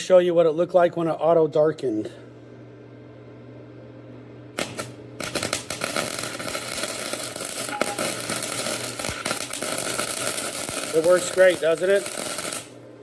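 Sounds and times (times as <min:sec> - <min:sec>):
low steady hum: 0:00.0 - 0:13.0
welding arc crackling: 0:04.5 - 0:12.8.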